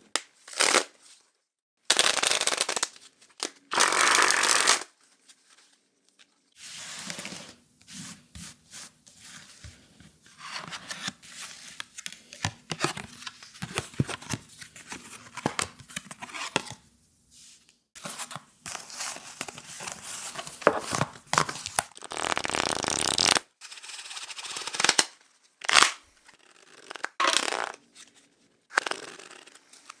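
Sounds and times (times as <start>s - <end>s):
playing cards shuffling: 6.6s - 23.4s.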